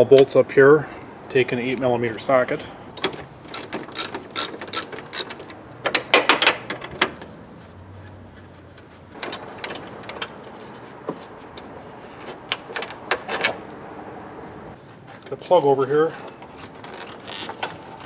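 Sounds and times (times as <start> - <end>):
socket ratchet clicking: 3.0 - 5.4, 9.2 - 10.2.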